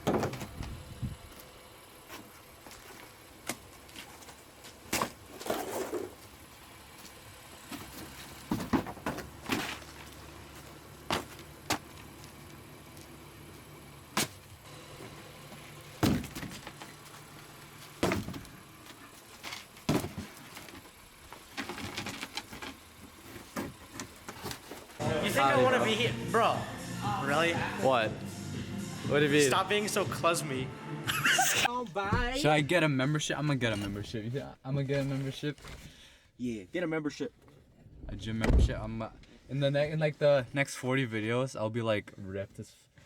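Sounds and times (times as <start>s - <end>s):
knocks and thumps in a car: 16.0s - 18.7s, 37.8s - 39.4s
faint low hum: 31.6s - 40.7s.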